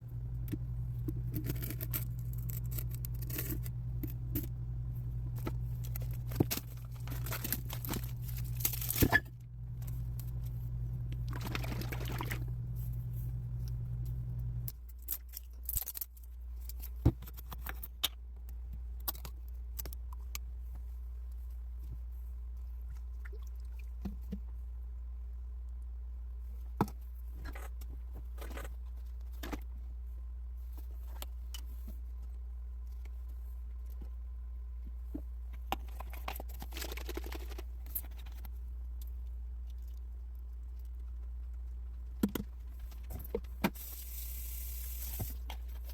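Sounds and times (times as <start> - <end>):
steady low hum: 0.0 - 14.9
packaging crinkling and tearing: 1.0 - 4.6, 5.3 - 9.2, 15.0 - 16.9, 35.8 - 38.4
liquid pouring: 11.2 - 12.6.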